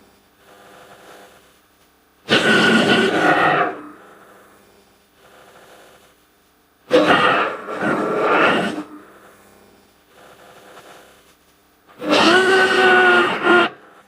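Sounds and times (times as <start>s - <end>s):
creature growls: 2.3s - 4.0s, 6.9s - 9.2s, 12.0s - 13.8s
creature roar: 2.3s - 4.0s, 6.9s - 9.2s, 12.0s - 13.8s.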